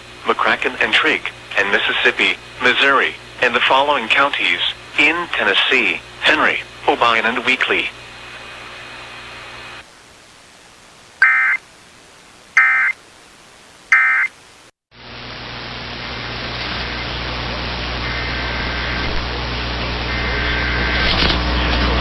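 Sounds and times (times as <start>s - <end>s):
steady hiss with low hum: 0.0s - 22.0s
short digital data bursts: 11.2s - 11.6s, 12.6s - 13.0s, 13.9s - 14.3s.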